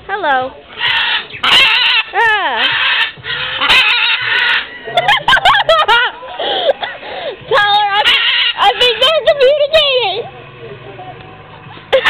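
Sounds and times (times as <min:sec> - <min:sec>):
parrot whistled calls: 0:00.7 - 0:04.8
parrots screaming: 0:00.7 - 0:10.0.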